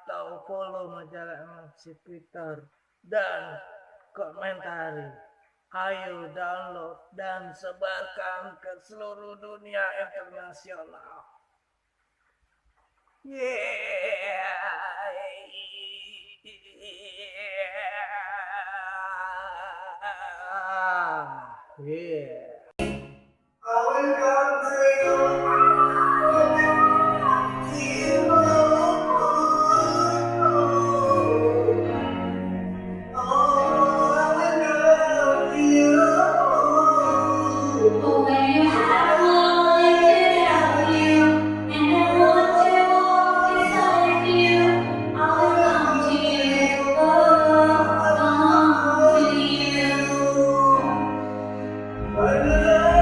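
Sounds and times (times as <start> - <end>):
held instrumental notes: 47.0 - 53.0.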